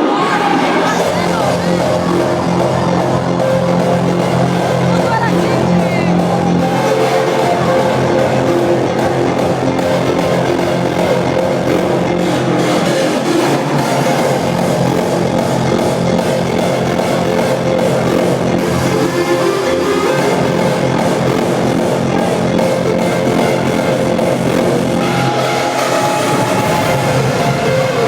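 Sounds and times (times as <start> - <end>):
hardstyle dance music: 0.0 - 28.0.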